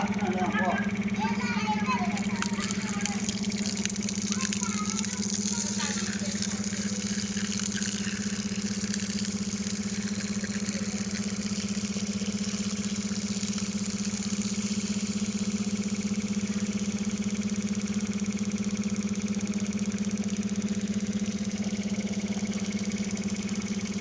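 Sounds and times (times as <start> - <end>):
electric water pump humming: 0.0 - 24.0.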